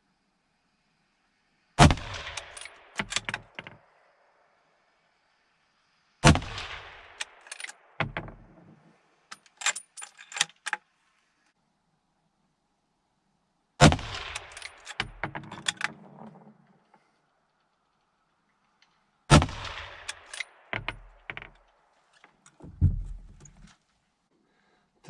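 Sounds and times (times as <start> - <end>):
rifle shots echoing: 1.8 - 3.1, 6.2 - 8.6, 13.8 - 15.2, 19.3 - 21.4.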